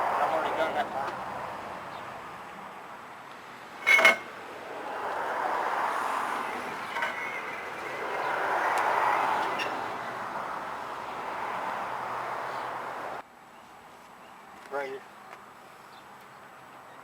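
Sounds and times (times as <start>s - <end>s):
metal tools clinking: 3.8s - 4.3s, 6.8s - 7.6s.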